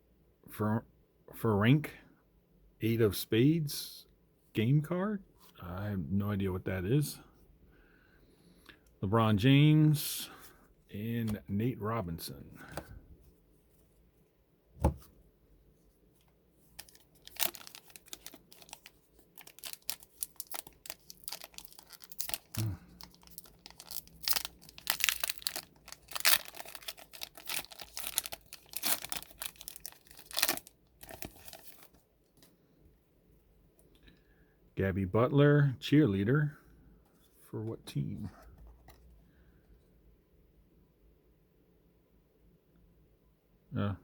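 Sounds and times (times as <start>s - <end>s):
dull thump: 14.8s - 15.1s
plastic wrapper crinkling: 16.7s - 32.0s.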